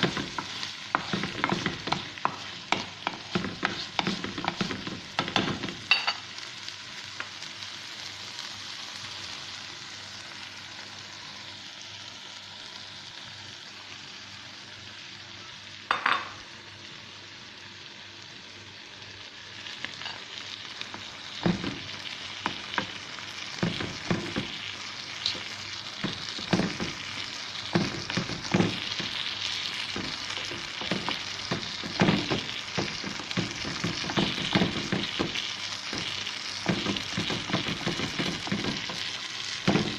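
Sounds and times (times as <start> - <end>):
utensil scraping a pan: 0.0 - 5.1
food sizzling in a frying pan: 0.0 - 39.9.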